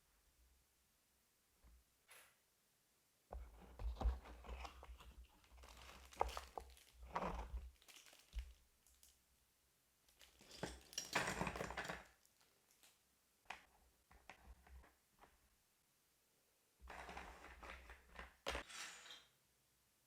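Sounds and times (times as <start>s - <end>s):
packaging crinkling and rustling: 3.9s - 9.2s, 10.1s - 13.0s.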